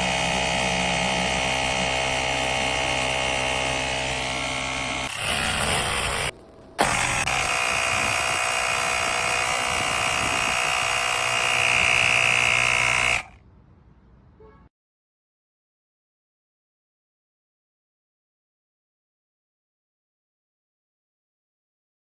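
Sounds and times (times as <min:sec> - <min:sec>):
tire inflator compressor buzzing: 0:00.0 - 0:13.4.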